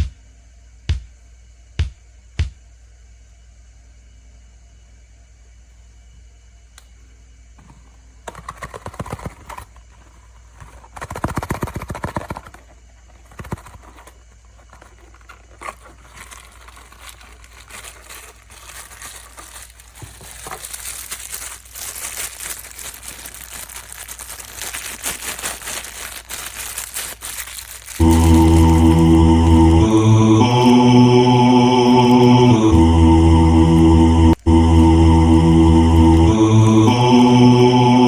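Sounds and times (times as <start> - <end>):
packaging wrapper crinkling: 8.4 - 37.6.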